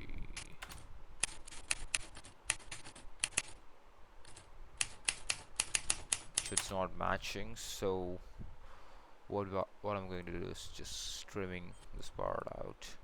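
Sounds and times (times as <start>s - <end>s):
typewriter key clacks: 4.8s - 6.8s.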